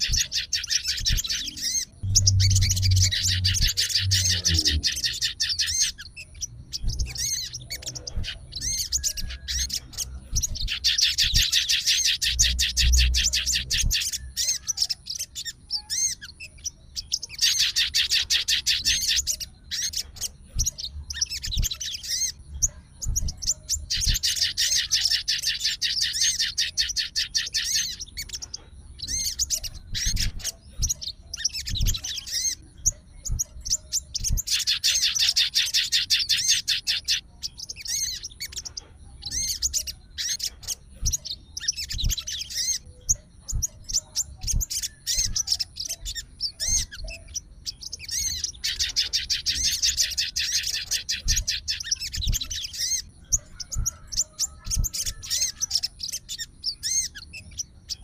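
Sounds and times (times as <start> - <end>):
songbird high chattering: 0.0 - 22.4.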